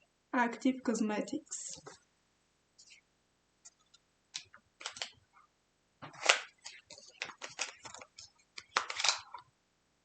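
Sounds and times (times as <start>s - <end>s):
packaging clicks and rustles: 3.7s - 5.2s, 6.1s - 9.4s.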